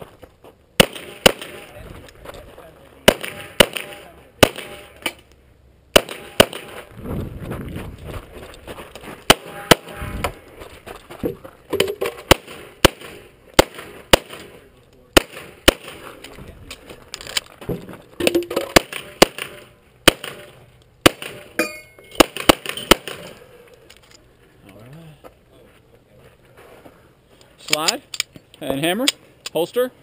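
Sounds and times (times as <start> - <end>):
pistol shots: 0.8 - 1.7, 3.0 - 5.0, 5.9 - 6.8, 9.3 - 10.0, 12.2 - 16.1, 18.6 - 23.3.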